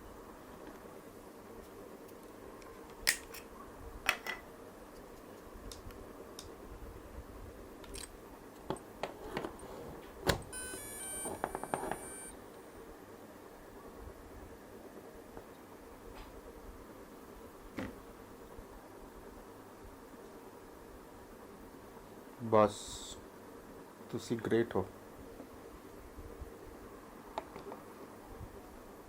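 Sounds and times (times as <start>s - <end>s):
brief rapid buzzing: 10.6s - 12.3s
drone startup beeps: 10.6s - 12.3s.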